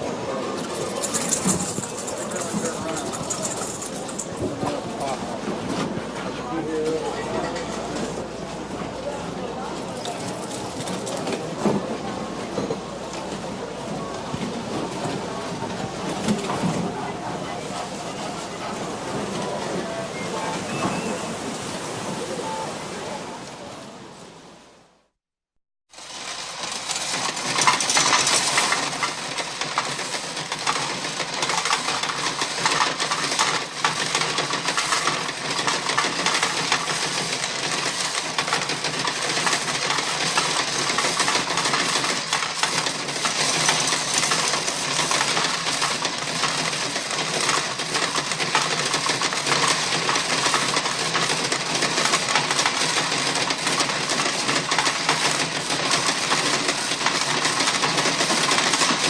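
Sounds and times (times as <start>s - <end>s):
coins clattering from slot machine: 0.8s - 4.4s.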